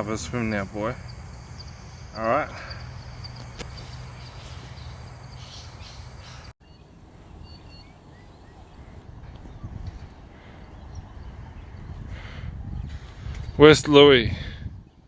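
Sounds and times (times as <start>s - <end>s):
high-pitched insect trill: 0.0s - 6.5s.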